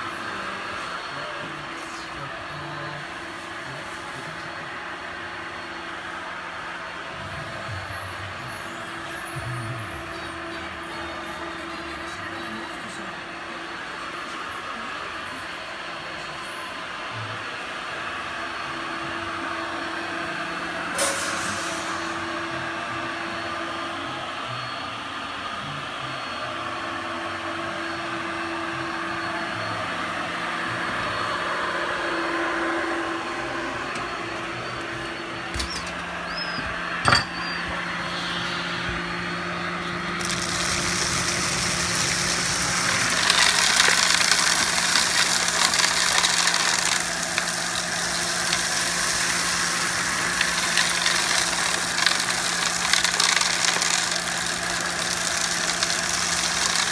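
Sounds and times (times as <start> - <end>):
vacuum cleaner motor hum: 0.0 - 56.9
debris sucked up crackling: 21.0 - 23.0, 38.0 - 56.9.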